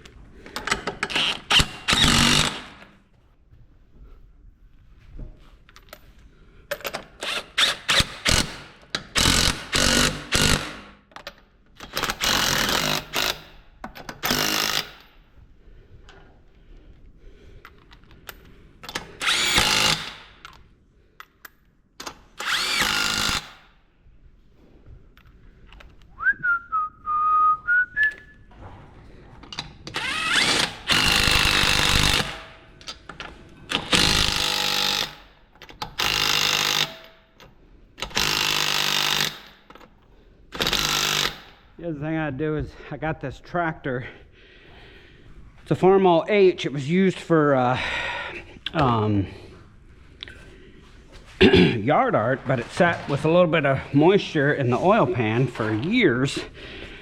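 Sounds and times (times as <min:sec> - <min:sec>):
handheld power tool bursts: 0:00.6 - 0:02.9, 0:07.2 - 0:10.9, 0:11.8 - 0:15.1, 0:18.9 - 0:20.4, 0:22.0 - 0:23.7, 0:29.9 - 0:32.6, 0:33.7 - 0:37.2, 0:38.0 - 0:39.8, 0:40.5 - 0:41.6.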